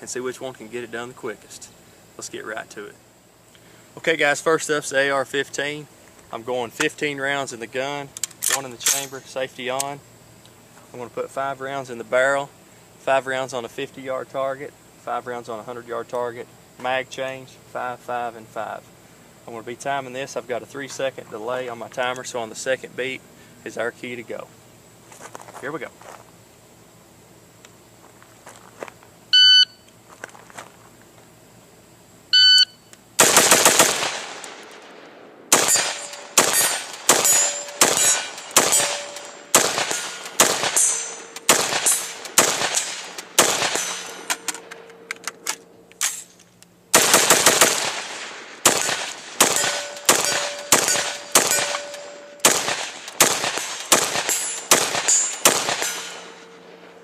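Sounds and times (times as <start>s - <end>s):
shot timer beeps: 29.4s - 29.9s, 32.3s - 32.9s
rifle gunshots: 33.2s - 44.9s, 46.9s - 57.0s.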